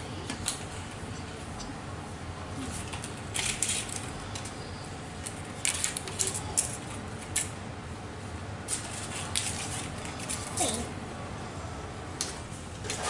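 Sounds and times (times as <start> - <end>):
paper cupcake cases rustling: 8.7 - 10.8.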